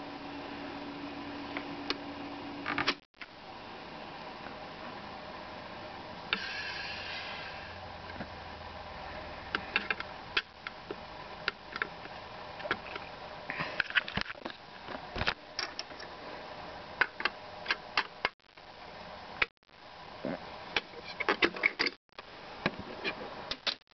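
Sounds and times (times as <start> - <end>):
record surface hiss: 0.0 - 23.9
record clicks and pops: 14.0 - 16.1, 23.5 - 23.9.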